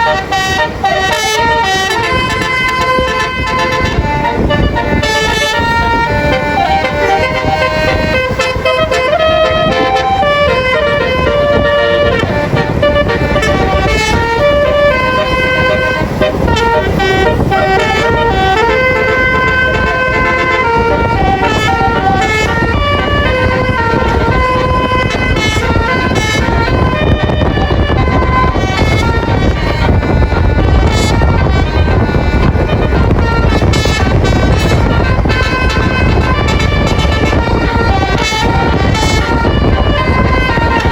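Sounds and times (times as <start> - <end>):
engine and road rumble: 0.0 - 40.9
musical air horn melody: 0.0 - 40.9.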